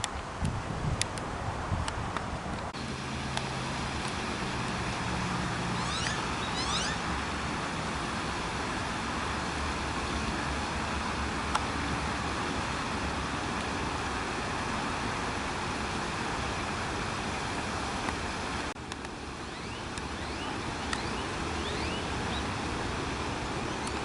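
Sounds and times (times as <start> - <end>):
steady rushing outdoor noise: 0.0 - 24.0
high rising bird chirps: 5.7 - 7.1, 19.4 - 22.5.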